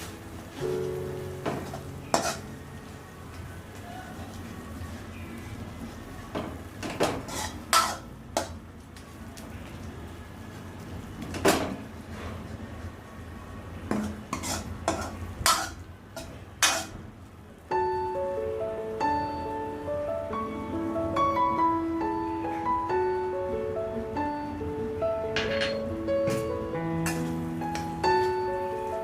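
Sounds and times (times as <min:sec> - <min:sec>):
piano music: 0:00.0 - 0:08.5, 0:13.2 - 0:29.0
metal spoon scraping cooking pot: 0:02.1 - 0:02.4, 0:07.0 - 0:08.0, 0:14.0 - 0:15.8.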